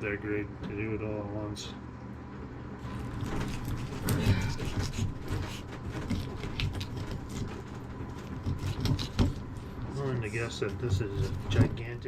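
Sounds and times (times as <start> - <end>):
knife scraping fish: 2.9 - 11.6.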